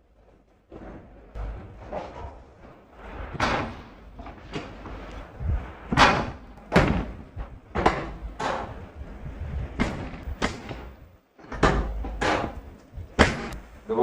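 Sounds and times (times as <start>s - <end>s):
sharp thuds or slaps: 5.4s - 8.8s, 9.5s - 13.6s.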